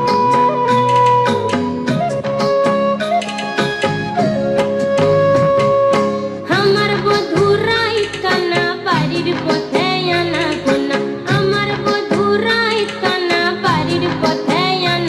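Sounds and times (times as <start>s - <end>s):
woman singing: 6.4s - 15.0s.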